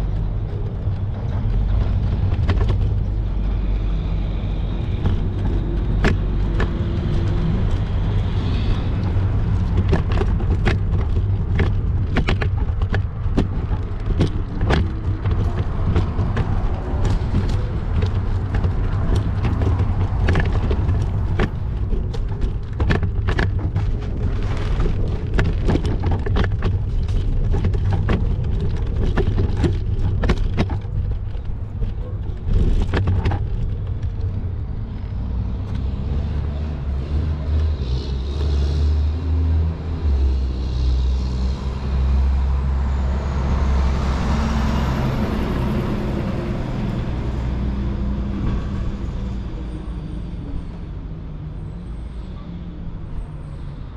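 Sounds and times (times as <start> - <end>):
rapid clicks and knocks: 0.0 - 35.8
heavy low rumble: 0.0 - 38.4
large vehicle engine running: 0.0 - 53.9.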